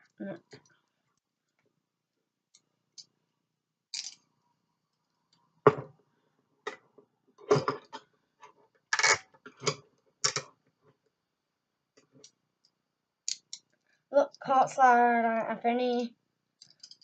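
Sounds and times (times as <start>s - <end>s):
metal handcuffs clinking: 16.6s - 17.0s.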